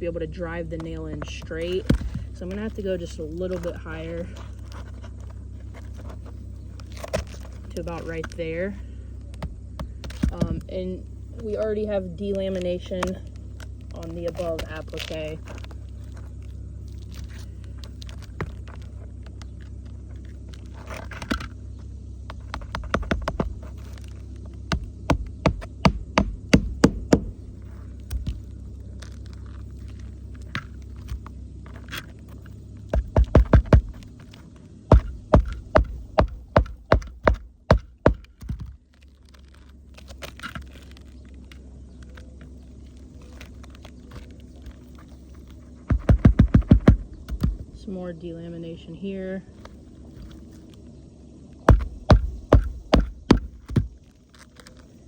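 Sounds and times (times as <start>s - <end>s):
low hum: 0.0s - 55.0s
hammer striking nails: 24.7s - 27.4s, 33.0s - 34.0s, 34.9s - 38.7s, 45.9s - 47.6s, 51.7s - 53.9s.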